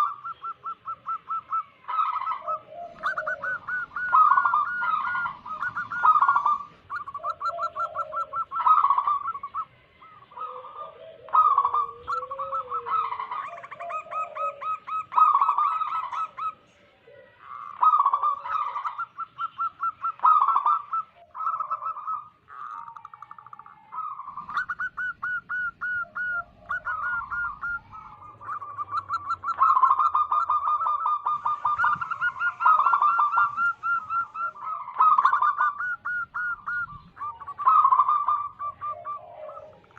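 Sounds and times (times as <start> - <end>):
doves cooing: 0.0 - 39.9.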